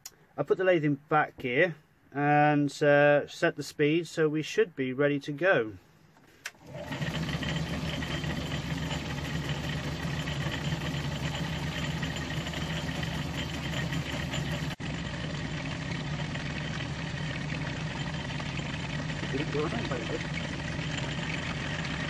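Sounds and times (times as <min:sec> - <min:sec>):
metal lathe motor and gear hum: 0:06.6 - 0:22.0.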